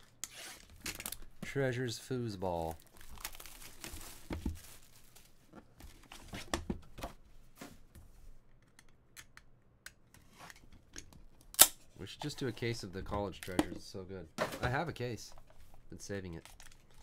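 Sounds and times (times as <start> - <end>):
plastic wrapping tearing and crinkling: 2.6 - 5.3.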